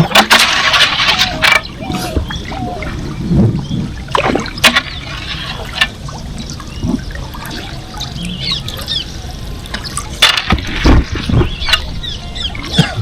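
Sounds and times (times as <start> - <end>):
paddle splashing water: 0.0 - 13.0
water dripping: 0.0 - 13.0
faint bird chirps: 6.4 - 10.0.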